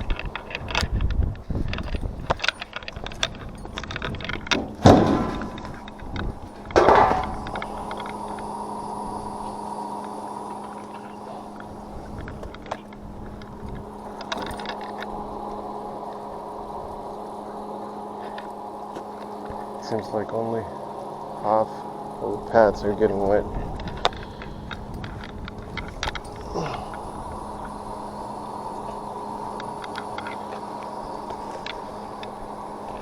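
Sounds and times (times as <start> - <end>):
knocks and rattles of housing: 0.0 - 8.1
water pump humming: 0.0 - 33.0.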